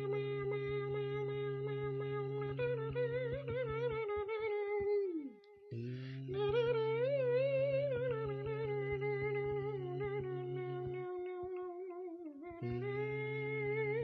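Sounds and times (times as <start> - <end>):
wavering hum-like melody: 0.0 - 14.0.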